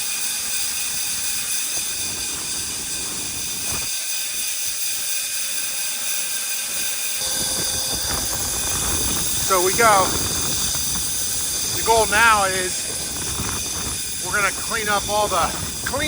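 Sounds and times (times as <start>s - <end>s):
high whining tones: 0.0s - 16.0s
rushing air hiss: 0.0s - 16.0s.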